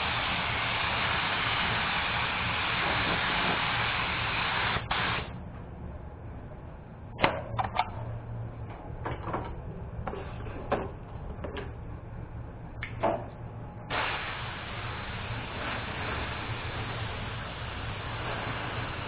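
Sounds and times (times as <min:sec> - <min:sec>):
compressed air hissing: 0:00.0 - 0:05.3, 0:13.9 - 0:19.0
low steady hum: 0:04.9 - 0:19.0.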